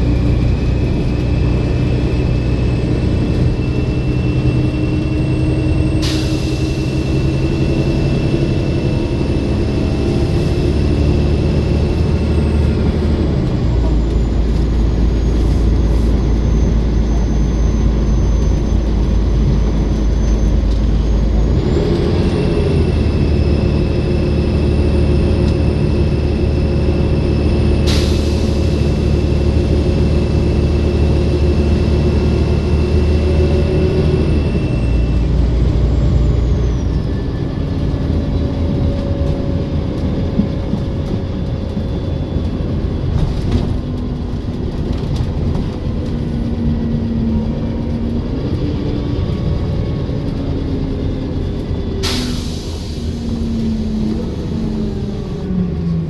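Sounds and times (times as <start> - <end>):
bus engine with turbo whine: 0.0 - 56.0.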